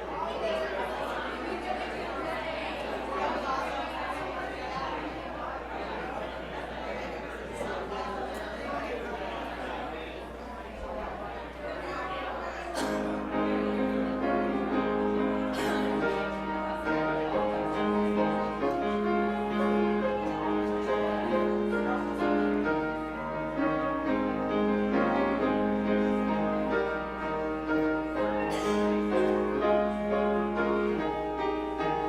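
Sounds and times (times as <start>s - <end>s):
slow piano music: 12.8s - 32.0s.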